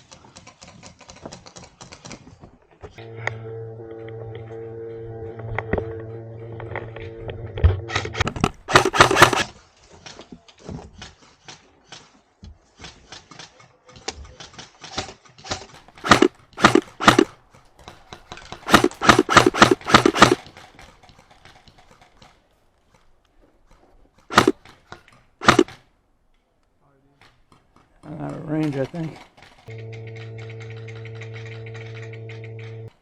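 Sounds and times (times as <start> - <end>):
airsoft rifle firing bursts: 8.4 - 9.5, 16.0 - 17.4, 18.6 - 20.9, 24.3 - 24.8, 25.4 - 25.8.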